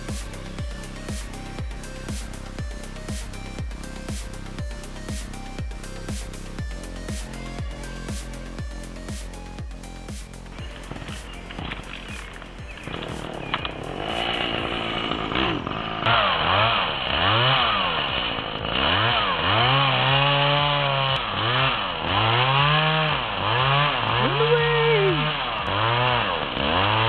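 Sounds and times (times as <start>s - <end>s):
chainsaw engine revving: 10.5s - 27.0s.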